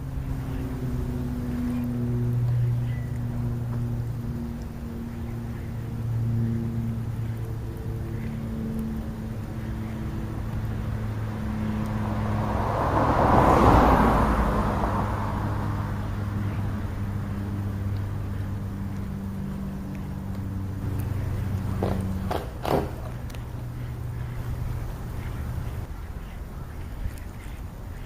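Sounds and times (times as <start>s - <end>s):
car passing by: 0.0s - 28.0s
steady low hum: 0.0s - 28.0s.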